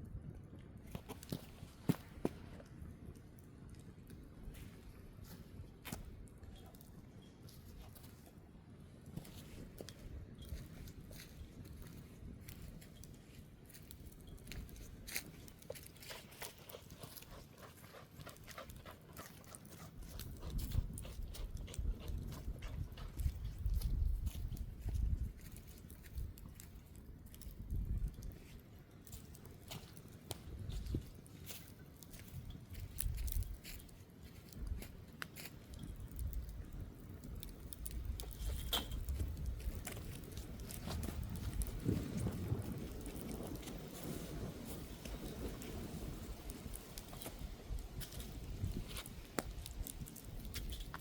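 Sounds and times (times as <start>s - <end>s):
campfire crackling and popping: 0.0s - 51.0s
wind buffeting microphone: 9.2s - 29.2s, 29.8s - 35.1s, 35.7s - 51.0s.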